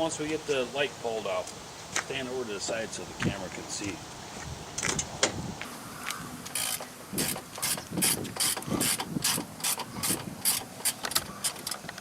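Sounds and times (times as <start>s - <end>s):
ratchet wrench clicking: 6.5s - 11.8s.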